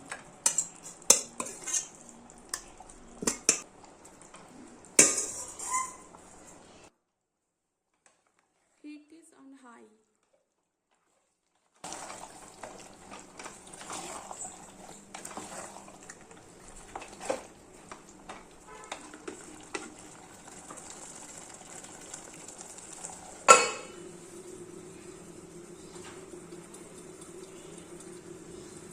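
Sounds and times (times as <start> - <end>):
food sizzling in a pot: 0.0 - 6.9, 11.8 - 28.9
metal spoon scraping a pot: 0.4 - 3.6, 5.0 - 6.6.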